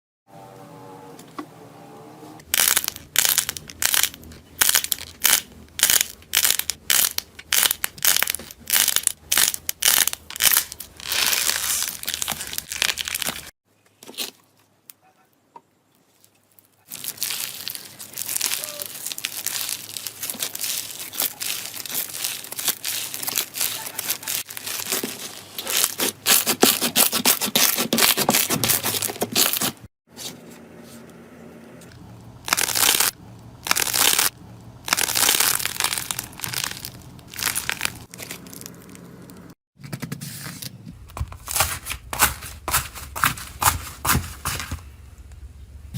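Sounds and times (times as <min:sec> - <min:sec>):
slime crackling and popping: 0:02.4 - 0:13.5, 0:16.9 - 0:27.4, 0:32.5 - 0:39.4.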